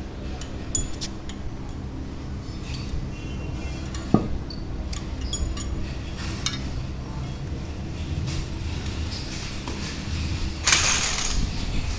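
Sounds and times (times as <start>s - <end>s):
steady low hum: 0.0s - 11.9s
metal engine parts clinking: 10.6s - 11.5s.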